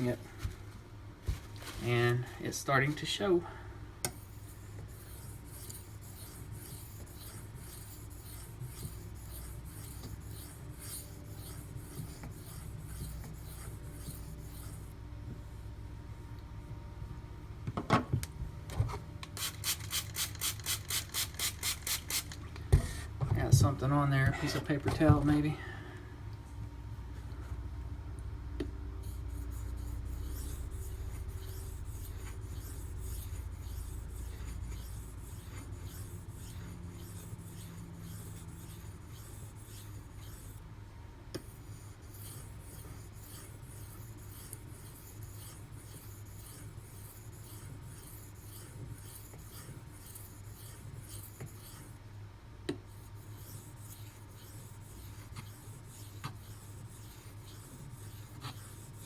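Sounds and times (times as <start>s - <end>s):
low hum: 22.4s - 41.2s.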